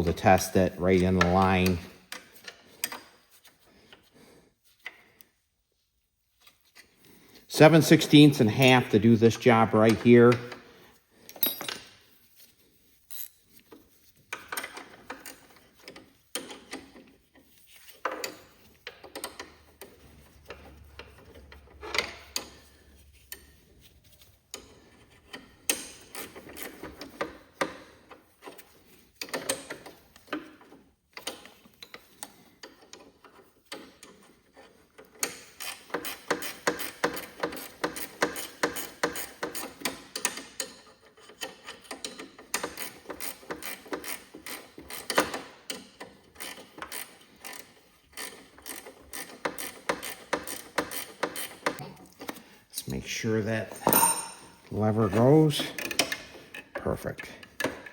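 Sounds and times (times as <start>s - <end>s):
ratchet wrench clicking: 35.2s - 40.7s, 41.3s - 51.8s.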